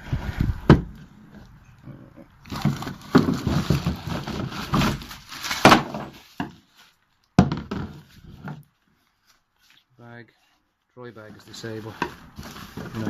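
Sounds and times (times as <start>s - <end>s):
packaging rustling and crackling: 2.5s - 7.1s, 11.4s - 13.0s.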